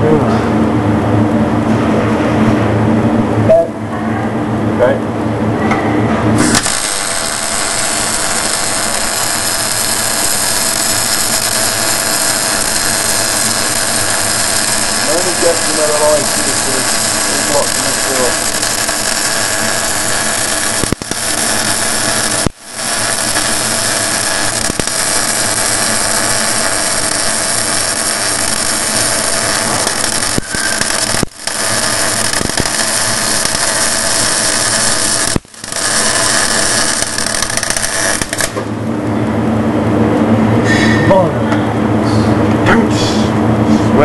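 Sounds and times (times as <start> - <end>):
welding arc hissing: 6.4 - 38.7.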